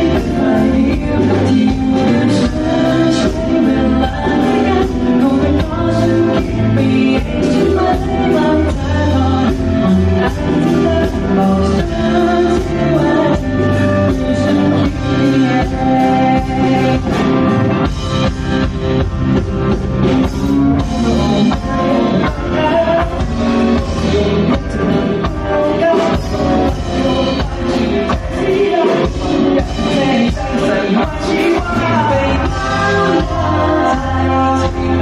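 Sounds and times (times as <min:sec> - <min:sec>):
live band playing: 0:00.0 - 0:35.0
person singing: 0:00.0 - 0:35.0.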